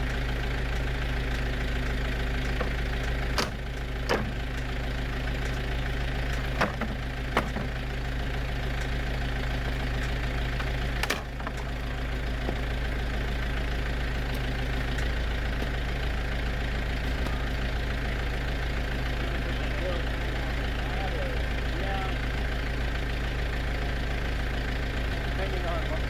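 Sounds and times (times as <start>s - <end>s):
low mechanical hum: 0.0s - 23.1s
metallic clanks: 2.4s - 4.7s, 5.4s - 7.9s, 9.9s - 12.6s.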